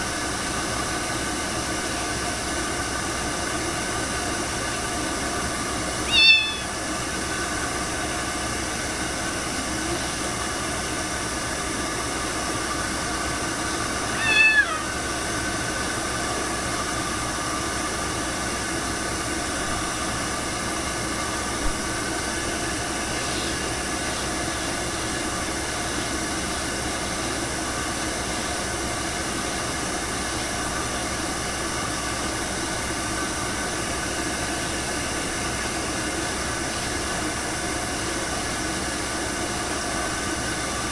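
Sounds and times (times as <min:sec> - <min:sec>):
cat meowing: 0:06.0 - 0:06.9, 0:13.8 - 0:15.2.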